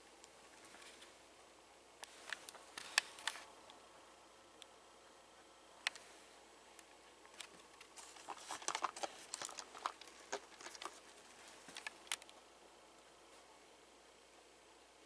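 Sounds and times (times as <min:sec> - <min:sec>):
toy truck clicking and rustling: 0:07.4 - 0:11.1.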